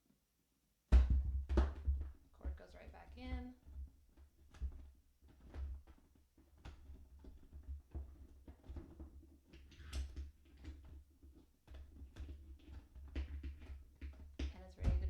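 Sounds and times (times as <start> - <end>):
plastic clicks and knocks: 1.0 - 15.0.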